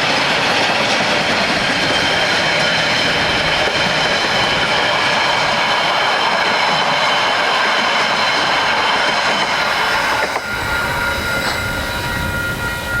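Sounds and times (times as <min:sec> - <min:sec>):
train wheels clattering on rails: 0:00.0 - 0:13.0
high-pitched wheel squeal: 0:08.1 - 0:13.0.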